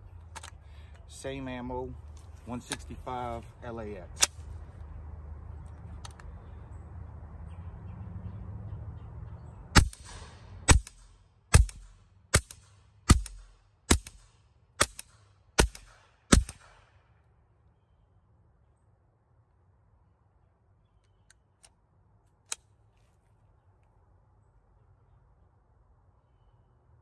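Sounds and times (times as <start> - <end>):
suppressed gunshots: 9.8 - 16.9.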